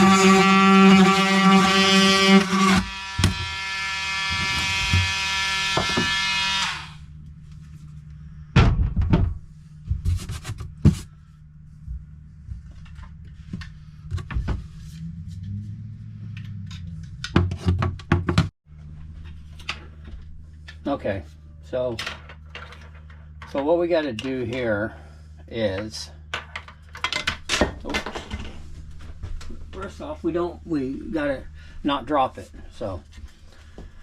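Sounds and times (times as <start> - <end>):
oscillating multi-tool buzzing: 0.0 - 7.1
knocks and thunks of handling: 8.6 - 11.1, 11.8 - 14.8, 16.5 - 18.5.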